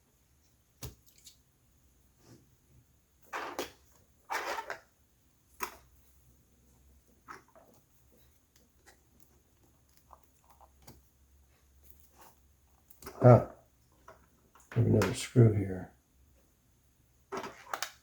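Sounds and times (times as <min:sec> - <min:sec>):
laptop parts scraping: 0:03.2 - 0:04.9.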